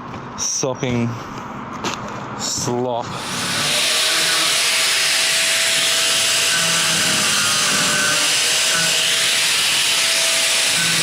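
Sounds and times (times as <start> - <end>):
power tool hissing: 3.1 - 11.0.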